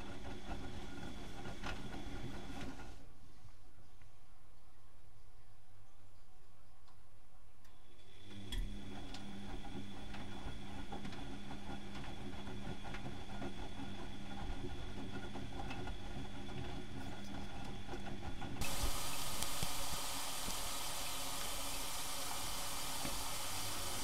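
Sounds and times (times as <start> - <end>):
washing machine motor hum: 0.0 - 3.0, 8.1 - 24.0
water flowing into machine: 18.6 - 24.0.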